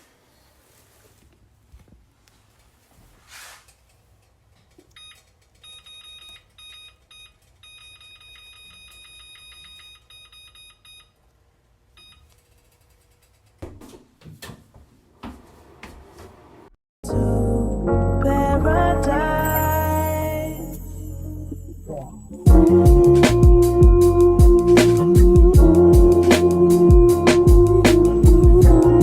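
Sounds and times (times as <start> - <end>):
appliance beeping: 4.9 - 11.2.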